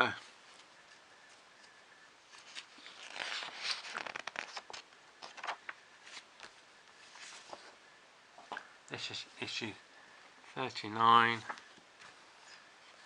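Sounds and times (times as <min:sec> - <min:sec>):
magazine pages rustling: 0:00.5 - 0:07.8.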